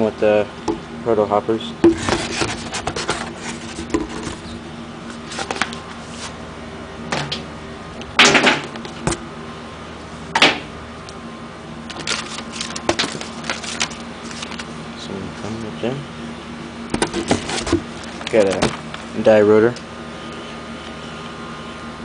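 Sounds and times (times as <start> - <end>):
packaging rustling: 11.9 - 14.7, 17.0 - 19.1.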